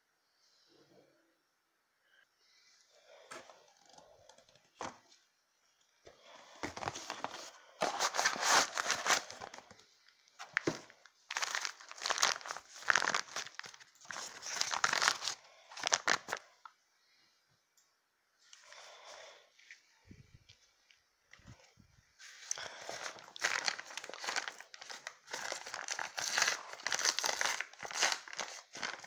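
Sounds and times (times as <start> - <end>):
crinkling handling noise: 3.0 - 16.8, 19.6 - 29.0.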